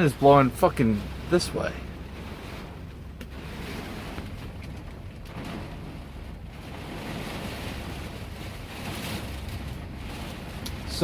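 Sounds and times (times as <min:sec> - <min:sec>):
storm wind against a truck: 0:00.0 - 0:11.0.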